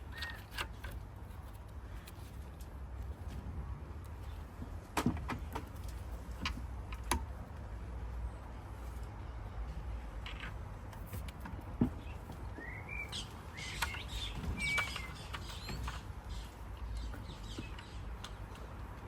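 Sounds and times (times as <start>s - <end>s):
birds chirping: 11.8s - 19.0s.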